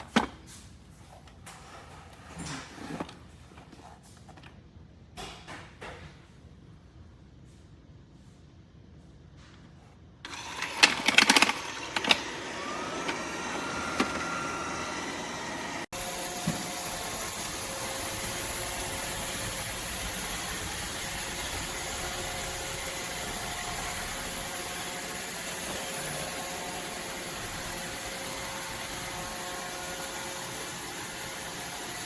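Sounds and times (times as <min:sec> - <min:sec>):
robot vacuum whirring: 0:10.3 - 0:32.0.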